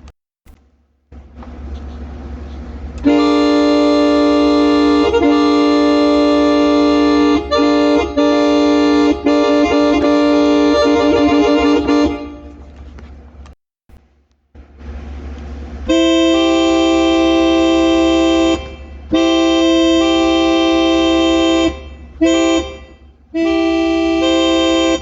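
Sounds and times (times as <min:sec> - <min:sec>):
keyboard chord like a train horn: 0:03.0 - 0:12.6, 0:15.9 - 0:25.0.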